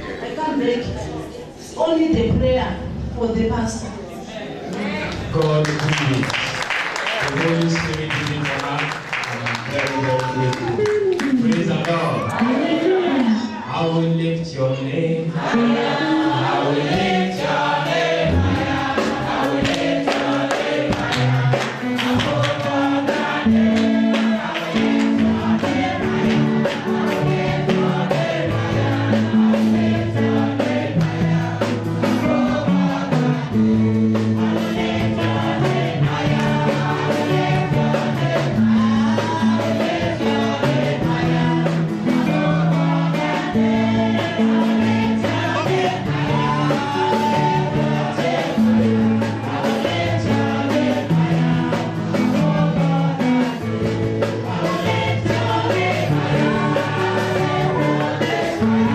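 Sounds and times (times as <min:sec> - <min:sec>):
bass notes: 0:10.6 - 0:58.9
choir singing: 0:12.0 - 0:13.9, 0:14.8 - 0:58.9.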